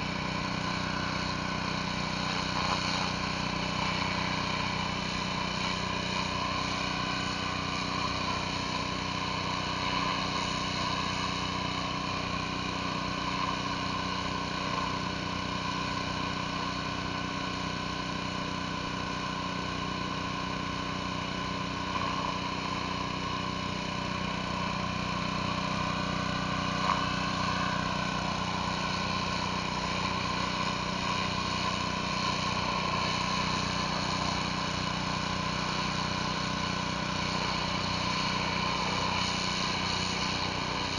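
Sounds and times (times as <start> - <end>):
pressure washer engine running: 0.0 - 40.9.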